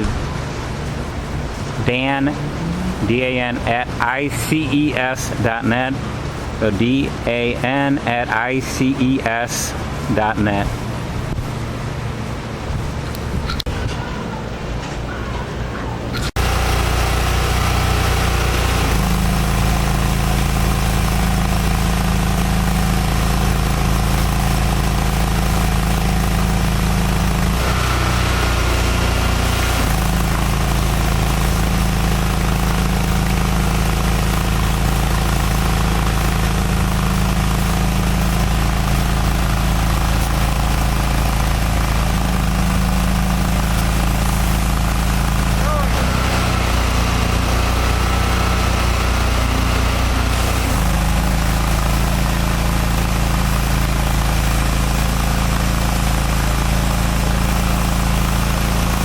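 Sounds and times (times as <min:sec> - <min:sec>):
pressure washer engine running: 0:00.0 - 0:13.4, 0:16.3 - 0:59.0.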